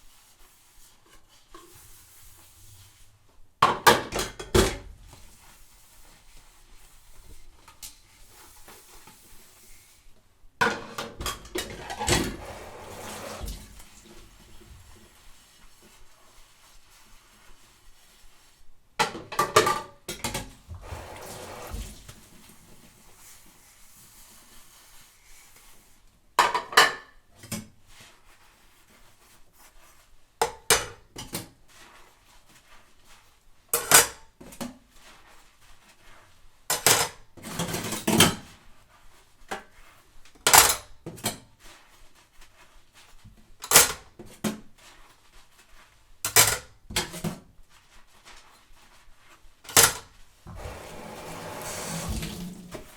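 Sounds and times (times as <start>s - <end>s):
dishes clinking while washed: 10.6s - 14.6s, 19.0s - 22.9s, 26.4s - 27.8s, 49.8s - 52.9s.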